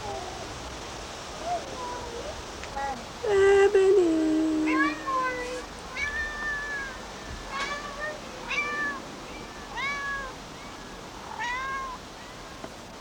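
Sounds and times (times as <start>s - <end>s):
cat meowing: 4.6s - 10.4s, 11.3s - 12.0s.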